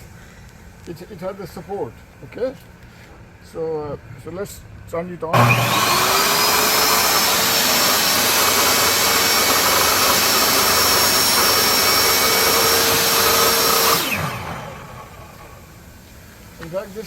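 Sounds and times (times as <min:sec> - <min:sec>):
table saw whining: 0:05.4 - 0:15.9.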